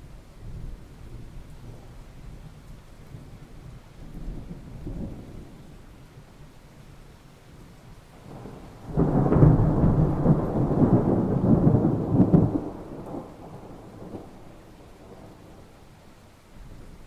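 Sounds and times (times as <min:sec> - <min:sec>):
thunder clap rumbling: 0:08.2 - 0:15.6.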